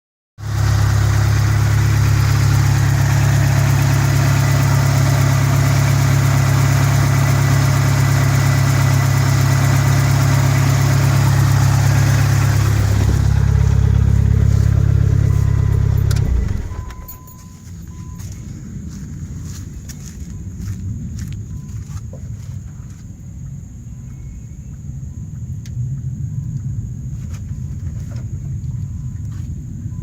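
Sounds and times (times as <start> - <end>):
car engine idling: 0.4 - 18.6.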